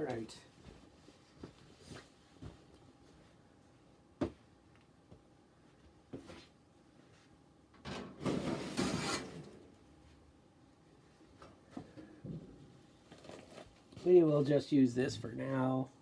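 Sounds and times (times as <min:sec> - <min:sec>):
rustling and scraping: 0:07.9 - 0:09.8, 0:12.6 - 0:14.4.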